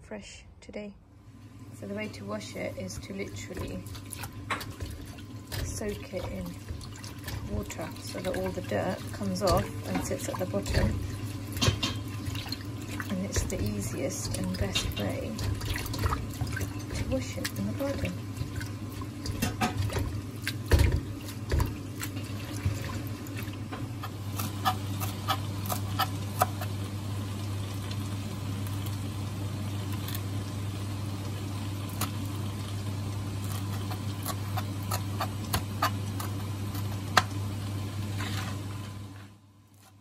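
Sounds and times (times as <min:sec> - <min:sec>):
water splashing in a bowl: 0:02.8 - 0:23.7.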